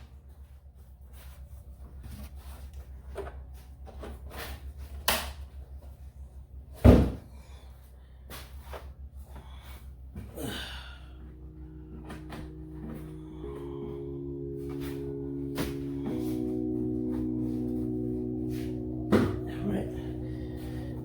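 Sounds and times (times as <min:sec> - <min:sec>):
low rumble: 0:10.5 - 0:21.0.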